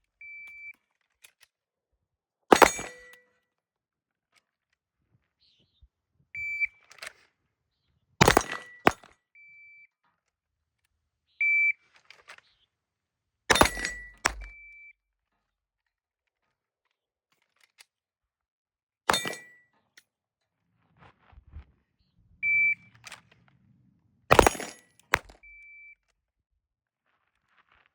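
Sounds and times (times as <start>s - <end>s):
faint short beeps: 0.2s - 0.8s, 6.4s - 7.0s, 8.6s - 9.9s, 11.4s - 11.8s, 13.8s - 15.0s, 22.4s - 23.1s, 25.4s - 26.1s
pistol gunshots: 8.2s - 9.0s, 13.5s - 14.4s, 24.3s - 25.4s
electronic shot timer beeps: 22.4s - 22.8s.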